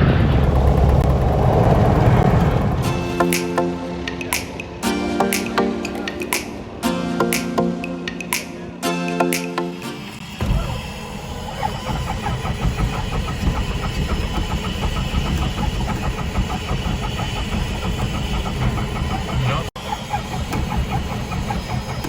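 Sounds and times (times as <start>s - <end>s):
aircraft piston engine running: 11.0s - 22.0s.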